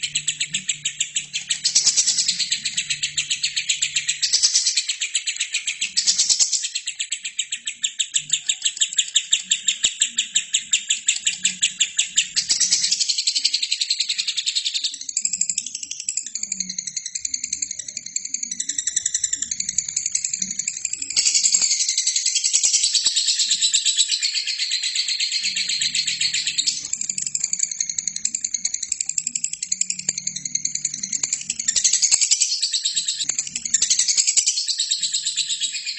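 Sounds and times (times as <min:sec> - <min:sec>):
lovebird chattering: 0:00.0 - 0:35.9.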